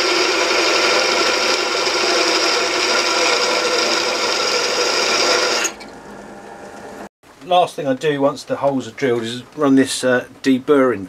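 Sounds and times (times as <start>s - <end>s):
electric drill grinding through metal: 0.0s - 6.0s.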